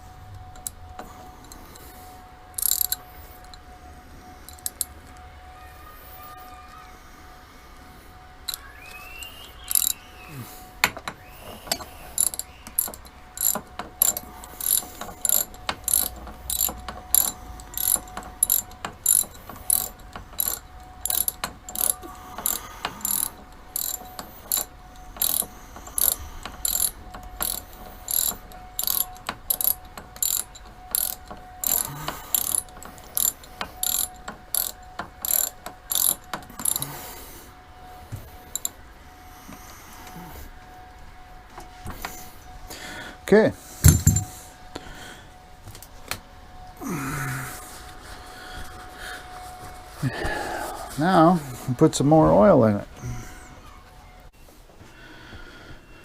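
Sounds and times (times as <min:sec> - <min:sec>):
ratchet wrench clicking: 0:02.6 - 0:03.0, 0:04.5 - 0:04.9, 0:09.6 - 0:10.0, 0:11.7 - 0:36.8, 0:38.5 - 0:38.7.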